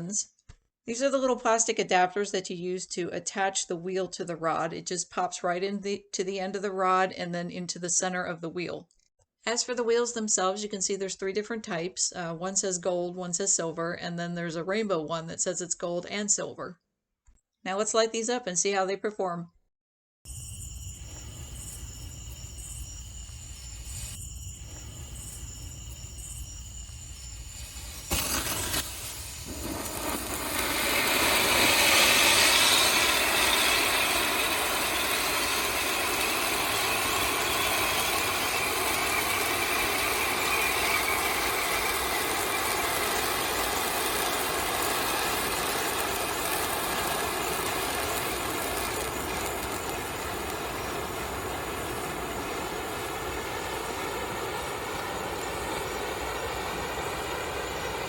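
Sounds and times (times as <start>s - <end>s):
hiss of spraying sparks: 23.4s - 53.4s.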